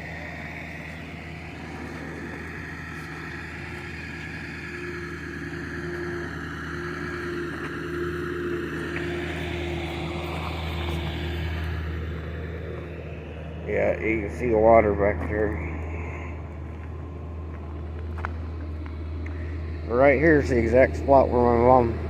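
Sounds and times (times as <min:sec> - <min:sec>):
vehicle engine running: 0:00.0 - 0:22.0.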